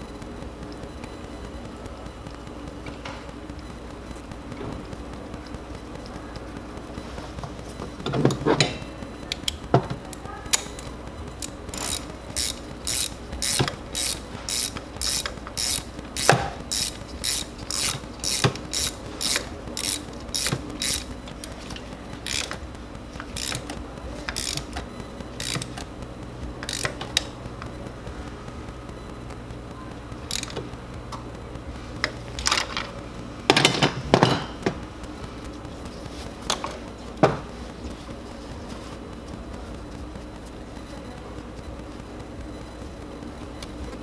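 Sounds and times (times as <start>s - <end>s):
ratchet wrench clicking: 8.3s - 27.7s, 30.2s - 31.2s
tools knocking: 11.5s - 25.9s, 33.5s - 34.9s, 36.5s - 37.6s.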